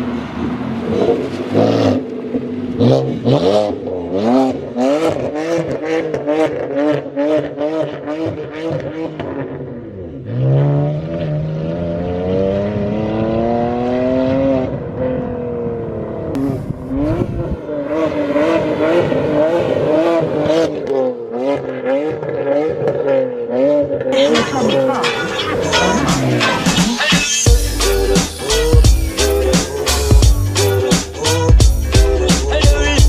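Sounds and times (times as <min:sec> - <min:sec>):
engine revving loudly: 0:16.3 - 0:22.8, 0:23.5 - 0:33.0.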